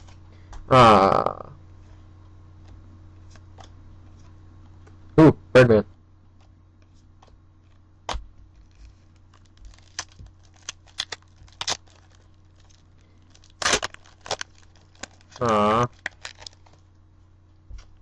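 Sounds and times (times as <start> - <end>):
cards and wrappers rustling: 8.5 - 16.9.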